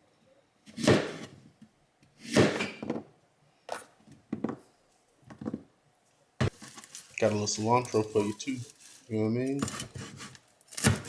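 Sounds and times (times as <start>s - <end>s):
knife scraping cutting board: 9.6s - 11.0s.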